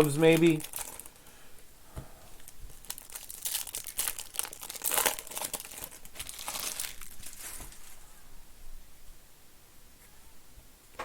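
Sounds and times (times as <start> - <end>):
wrapping crinkling and tearing: 0.0 - 1.2, 2.4 - 8.0.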